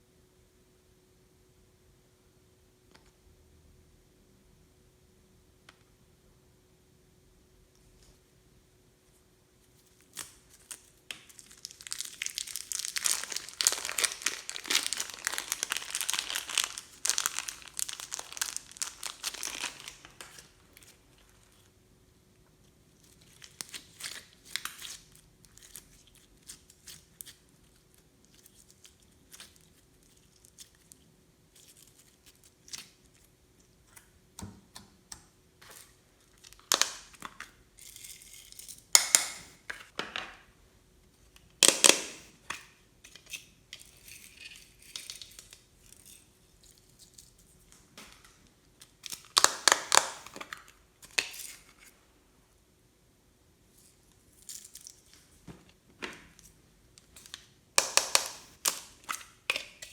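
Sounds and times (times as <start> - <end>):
slime crinkling and crackling: 9.7 - 21.8, 22.9 - 34.2, 35.7 - 39.4, 44.7 - 51.8, 54.3 - 59.9.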